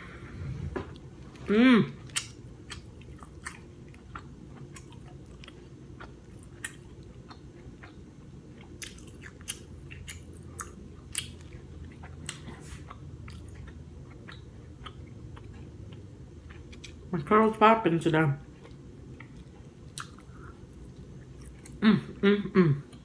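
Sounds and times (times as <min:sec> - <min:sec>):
person chewing food: 0:00.0 - 0:17.1, 0:18.4 - 0:22.2.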